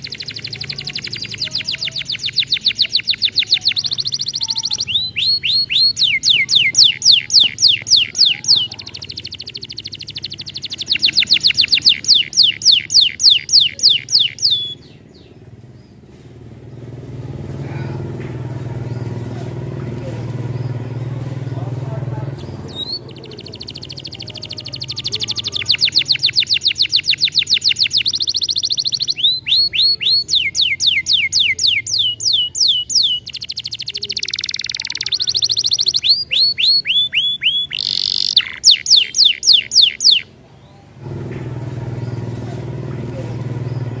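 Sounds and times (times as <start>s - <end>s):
canary singing trills: 0.0s - 16.1s, 18.0s - 44.0s.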